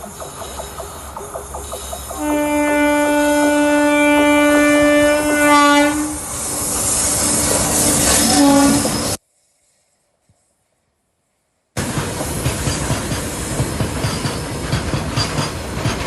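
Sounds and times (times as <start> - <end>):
train wheels rumbling on rails: 0.0 - 9.2, 11.8 - 16.0
locomotive horn blast: 2.2 - 6.3, 7.2 - 9.2.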